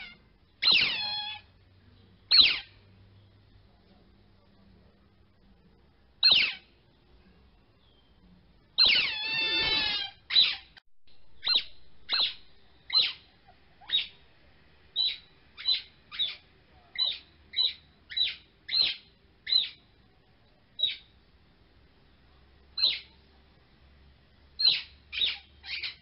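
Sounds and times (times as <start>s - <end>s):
bird-like chirping: 0.0s - 3.5s, 6.2s - 6.9s, 8.8s - 14.3s, 14.9s - 19.9s, 20.7s - 21.2s, 22.7s - 23.2s, 24.6s - 26.0s.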